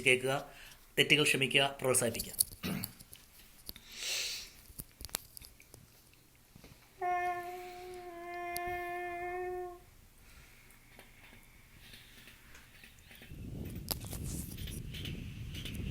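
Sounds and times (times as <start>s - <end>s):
man imitating train horn: 7.0s - 9.9s.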